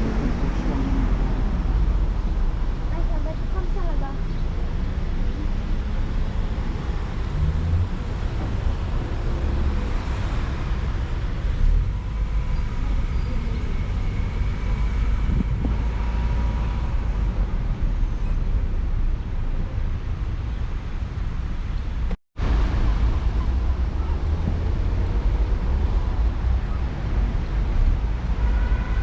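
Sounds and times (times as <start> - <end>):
moving vehicle rumble: 0.0 - 29.0.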